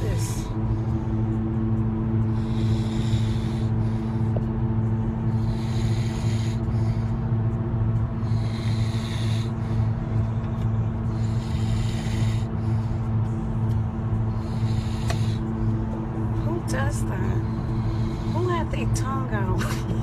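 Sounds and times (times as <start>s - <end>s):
car hum: 0.0s - 20.0s
man snoring: 2.2s - 4.0s, 5.2s - 6.7s, 8.2s - 10.0s, 10.8s - 12.7s, 14.3s - 15.6s.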